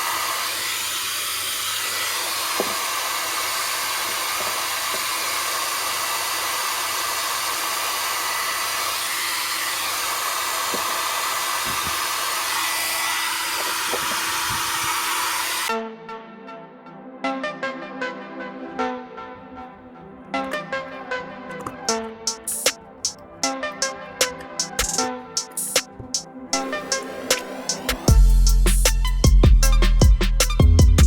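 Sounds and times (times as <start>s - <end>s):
hair dryer running: 0.0s - 15.7s, 20.5s - 28.4s
music: 13.7s - 31.0s.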